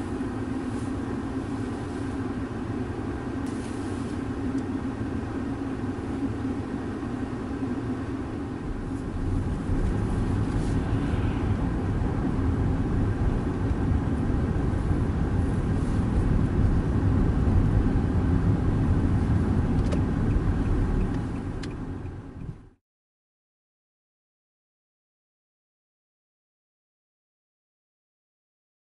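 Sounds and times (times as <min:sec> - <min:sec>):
low rumble of motor vehicles: 0:00.0 - 0:22.8.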